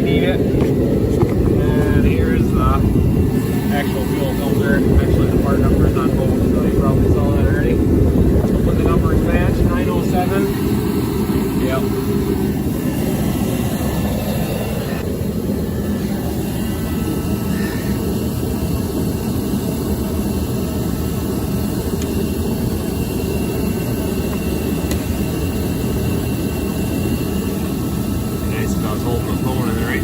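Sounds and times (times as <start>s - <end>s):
heater blowing noise: 0.0s - 30.0s.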